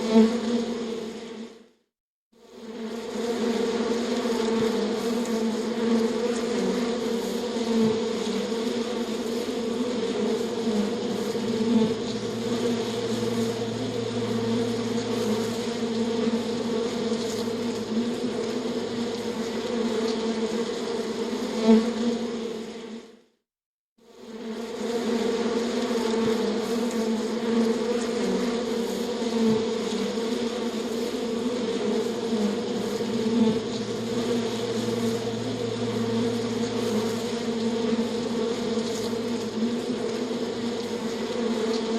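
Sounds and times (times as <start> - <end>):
insect wings buzzing: 2.4 - 23.0, 24.2 - 41.9
low steady hum: 10.4 - 19.7, 32.3 - 40.8.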